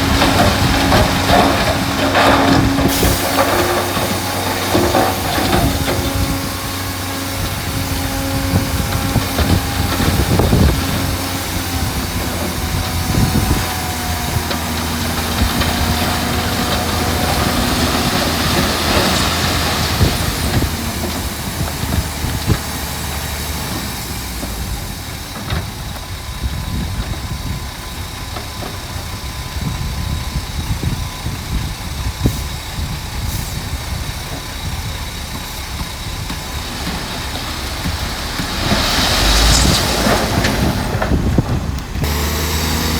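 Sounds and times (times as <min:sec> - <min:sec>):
diesel machinery engine running: 0:00.0 - 0:42.9.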